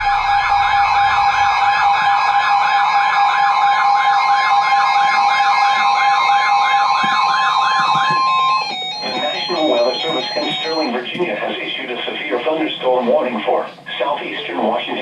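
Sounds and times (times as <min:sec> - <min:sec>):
siren-like warble: 0:00.0 - 0:11.1
steady two-note alert tone: 0:08.2 - 0:11.0.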